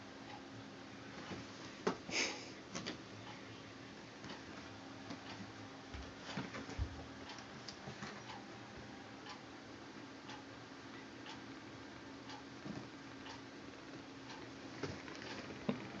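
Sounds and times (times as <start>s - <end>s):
steady low hum: 0.0s - 16.0s
clock ticking: 9.2s - 9.5s, 10.2s - 11.6s, 12.2s - 13.5s, 14.2s - 16.0s.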